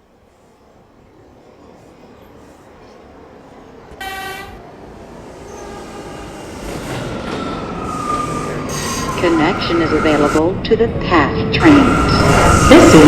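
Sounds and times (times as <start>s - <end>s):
subway train rail rumble: 0.0s - 13.0s
train horn toot: 4.0s - 4.6s.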